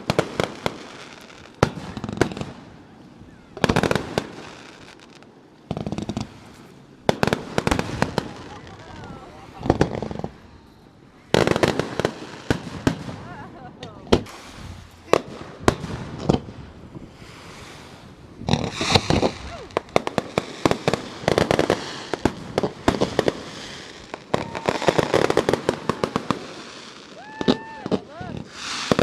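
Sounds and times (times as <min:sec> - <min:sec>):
firework bangs: 0:00.0 - 0:02.9, 0:03.5 - 0:10.7, 0:11.3 - 0:29.0
firework crackling bursts: 0:00.0 - 0:02.9, 0:03.5 - 0:29.0
firework whistling: 0:00.0 - 0:13.3, 0:14.2 - 0:29.0.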